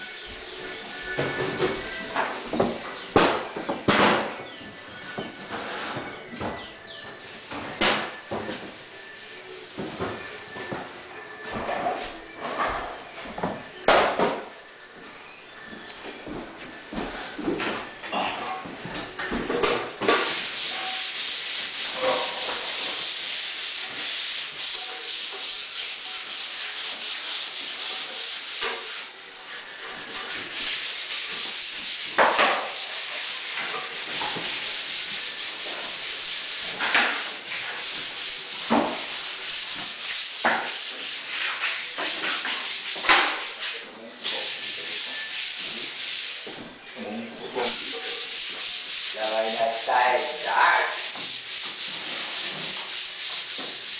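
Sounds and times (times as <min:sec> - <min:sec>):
sanding a surface: 0:20.1 - 0:46.5, 0:47.6 - 0:53.9.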